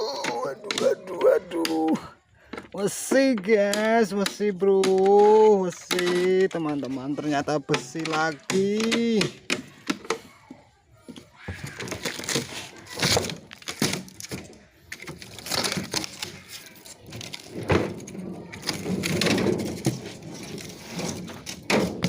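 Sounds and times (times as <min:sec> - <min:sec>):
metal parts clattering and scraping: 0:11.6 - 0:22.0.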